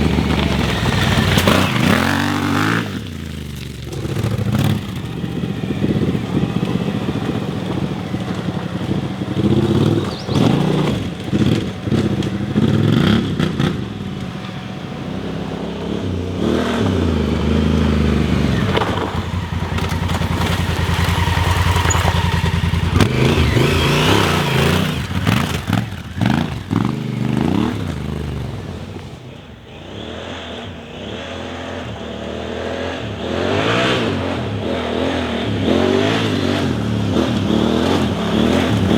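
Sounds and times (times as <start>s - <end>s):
bike clattering over rough ground: 0.0s - 14.5s, 17.5s - 29.2s
motorcycle engine revving: 0.0s - 38.9s.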